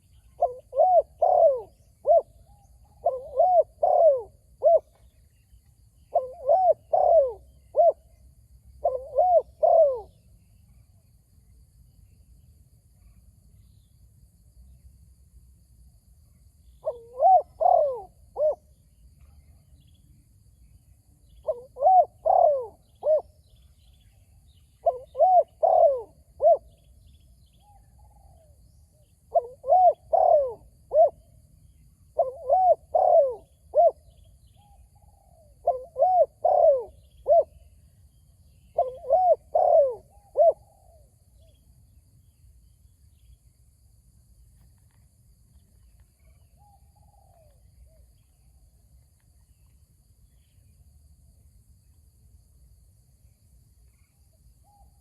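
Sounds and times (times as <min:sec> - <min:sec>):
dove cooing: 0:00.0 - 0:05.1, 0:06.1 - 0:08.2, 0:08.8 - 0:10.2, 0:16.8 - 0:19.4, 0:21.4 - 0:23.3, 0:24.8 - 0:26.8, 0:29.3 - 0:31.2, 0:32.2 - 0:37.7, 0:38.7 - 0:41.1.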